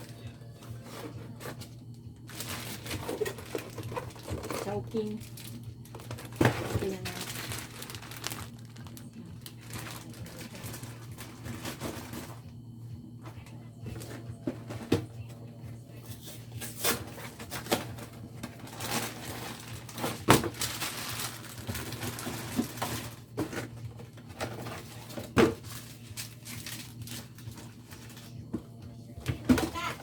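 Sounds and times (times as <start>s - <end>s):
fridge freezer hum: 0.0s - 30.0s
plastic rustling: 2.2s - 12.4s, 16.7s - 23.8s, 24.4s - 28.6s
food packages knocking: 2.4s - 12.3s, 18.8s - 23.8s.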